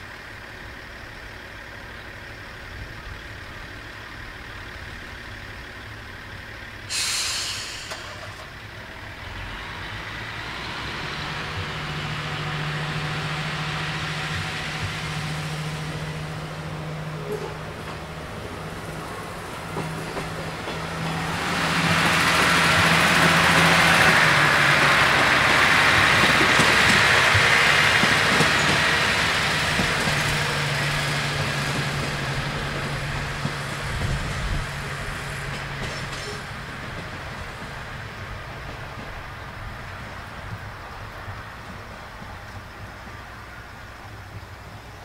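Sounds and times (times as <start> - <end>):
diesel engine humming: 0.0 - 45.0
train wheels on rails: 0.2 - 45.0
wheels clicking over rail joints: 16.8 - 45.0.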